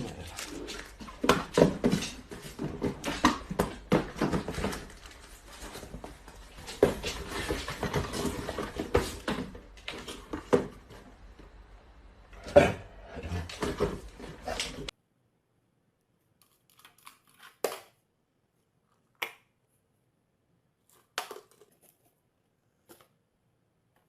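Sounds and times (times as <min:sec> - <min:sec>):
dog knocking and scuffling: 0:00.0 - 0:11.1, 0:12.5 - 0:14.9.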